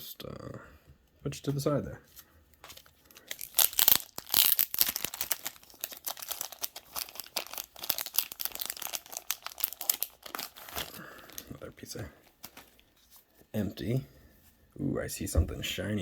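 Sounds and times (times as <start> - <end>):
card pack wrapper tearing and crinkling: 2.6 - 11.6, 12.2 - 12.8.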